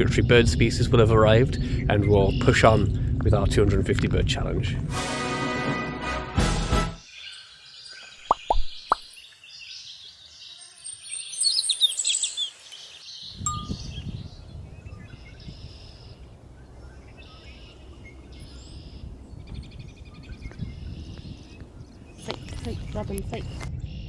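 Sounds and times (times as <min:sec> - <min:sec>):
songbirds singing: 0:00.0 - 0:03.8, 0:07.0 - 0:24.0
wind rumble on microphone: 0:00.0 - 0:05.0, 0:13.3 - 0:24.0
bird trilling: 0:15.4 - 0:23.7.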